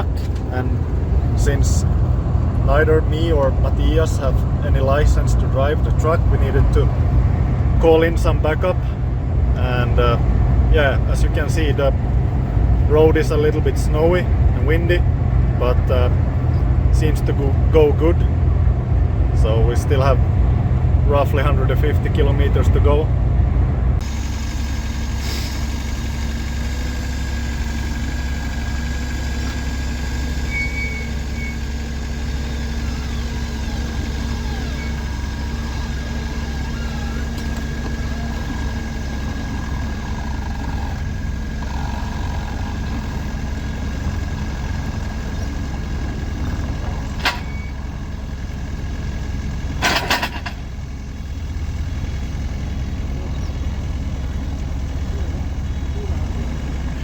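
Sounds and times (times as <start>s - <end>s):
heavy truck engine and road rumble: 0.0s - 57.0s.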